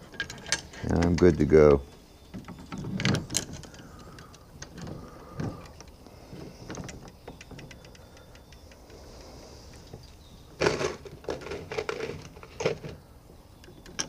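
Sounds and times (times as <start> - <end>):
metal brackets clicking and knocking: 0.0 - 6.0, 6.6 - 9.0.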